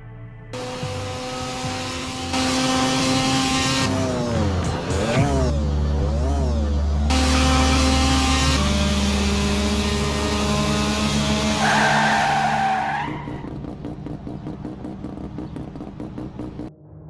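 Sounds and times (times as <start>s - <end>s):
race car engine at high revs: 0.6s - 16.7s
tyre squeal: 9.2s - 13.6s.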